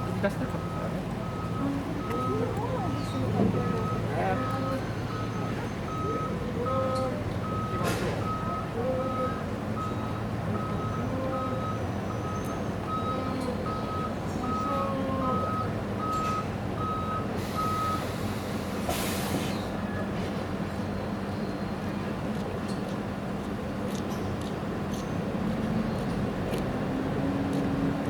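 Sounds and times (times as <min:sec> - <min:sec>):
murmur of voices: 0:00.0 - 0:09.7
vehicle reversing alarm beeping: 0:00.0 - 0:19.7.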